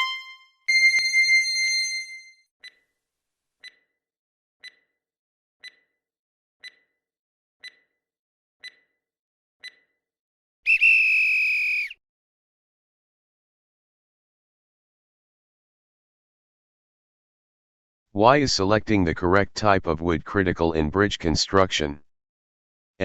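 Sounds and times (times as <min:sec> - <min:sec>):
timer ticking: 0:03.6 - 0:03.9, 0:04.6 - 0:04.9, 0:05.6 - 0:05.9, 0:06.6 - 0:06.9, 0:07.6 - 0:07.9, 0:08.6 - 0:08.9, 0:09.6 - 0:09.9.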